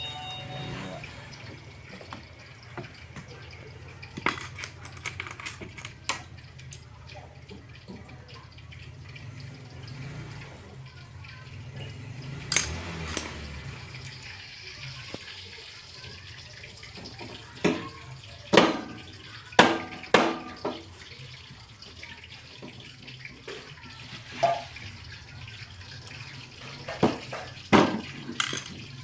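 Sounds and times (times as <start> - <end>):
metal tools clinking and knocking: 4.2 - 6.2, 27.9 - 28.8.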